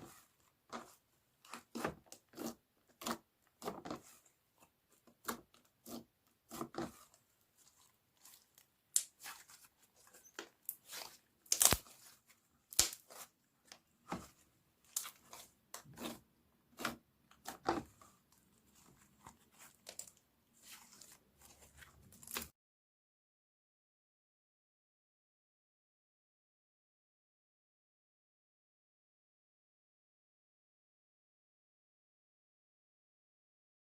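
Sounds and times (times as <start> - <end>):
slime crackling and popping: 10.7 - 12.1, 12.7 - 13.2.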